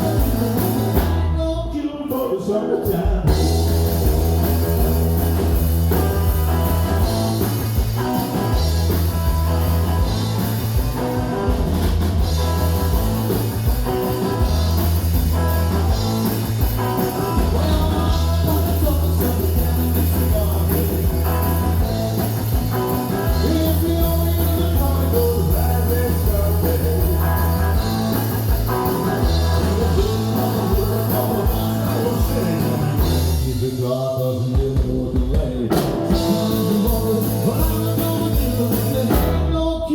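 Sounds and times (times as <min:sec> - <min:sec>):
person singing: 0:00.0 - 0:04.6, 0:17.1 - 0:39.9
driving bass line: 0:00.0 - 0:39.9
drum kit: 0:00.0 - 0:39.9
guitar: 0:00.0 - 0:39.9.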